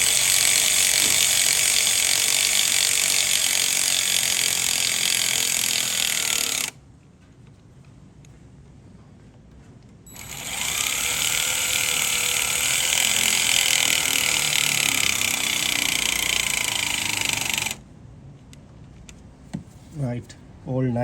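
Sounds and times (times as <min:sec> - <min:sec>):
cordless power driver whine: 0:00.0 - 0:06.8, 0:10.1 - 0:17.8.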